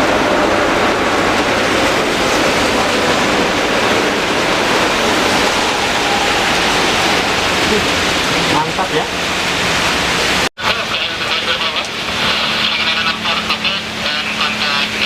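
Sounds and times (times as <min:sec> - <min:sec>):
faint whine: 0:00.0 - 0:09.6
heavy rain falling: 0:00.0 - 0:15.0.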